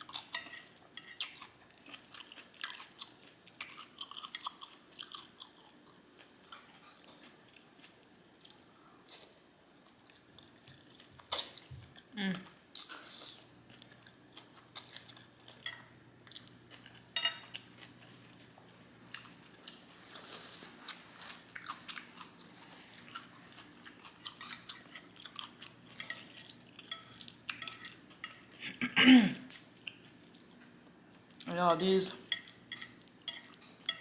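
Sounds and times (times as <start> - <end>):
food crunching: 0.0 - 11.7, 12.8 - 28.5
wet chewing and smacking: 0.0 - 12.0.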